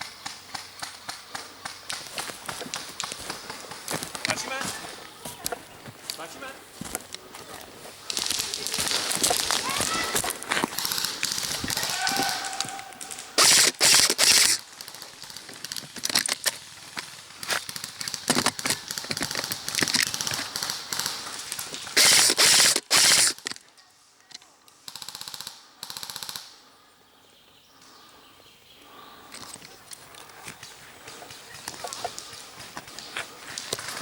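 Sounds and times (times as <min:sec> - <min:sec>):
airsoft gun bursts: 0:10.7 - 0:16.7, 0:17.3 - 0:23.6.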